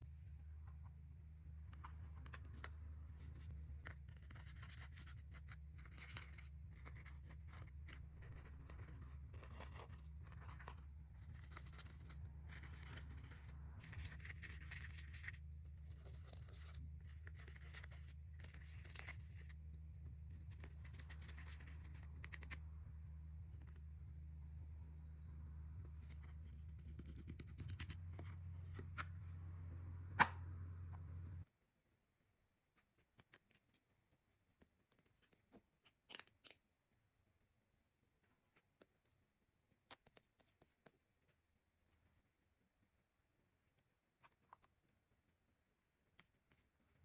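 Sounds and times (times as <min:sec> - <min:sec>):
steady low hum: 0:00.0 - 0:31.5.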